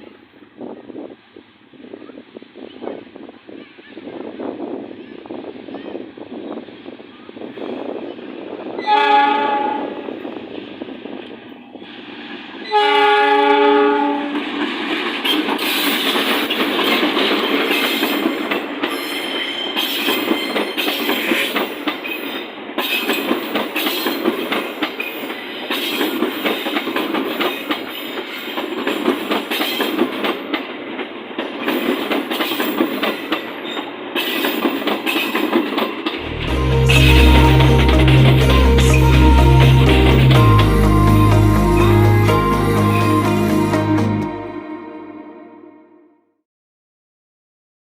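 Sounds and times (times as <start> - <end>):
train passing with rumble: 0.0 - 45.2
train horn blasts: 8.8 - 10.2, 12.6 - 14.5, 36.2 - 46.2
wheels clacking over rail joints: 14.4 - 36.2.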